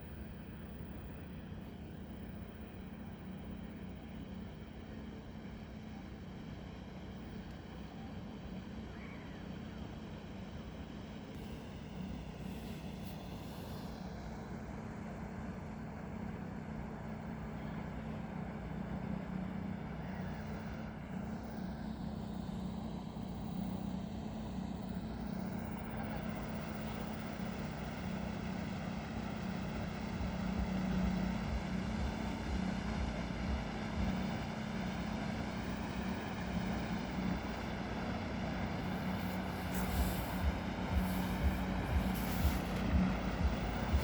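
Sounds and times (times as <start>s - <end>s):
low engine drone: 0.0s - 44.0s
background hiss: 38.8s - 44.0s.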